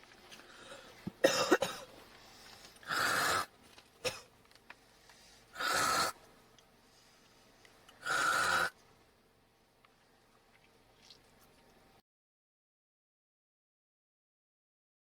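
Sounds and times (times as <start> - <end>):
woman hawking phlegm: 5.6 - 6.2, 8.0 - 8.8.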